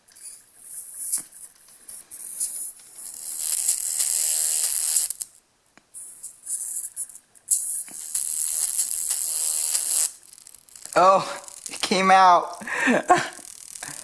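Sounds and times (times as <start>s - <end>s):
overdriven speaker buzzing: 2.1s - 5.4s, 7.5s - 14.0s.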